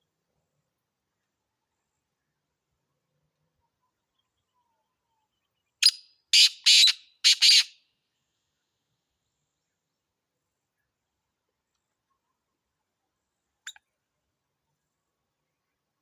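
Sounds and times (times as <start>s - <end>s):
francolin calling: 5.8s - 7.8s.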